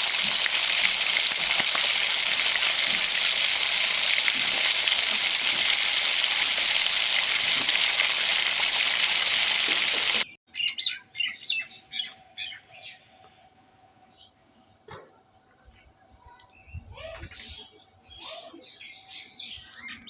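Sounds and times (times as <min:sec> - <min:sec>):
food sizzling in a pan: 0:00.0 - 0:10.3.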